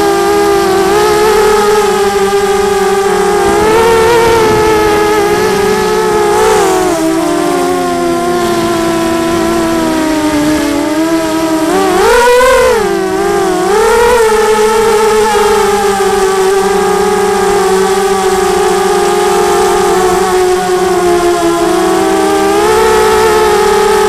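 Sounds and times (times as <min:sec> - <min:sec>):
quadcopter motors whining: 0:00.0 - 0:24.0.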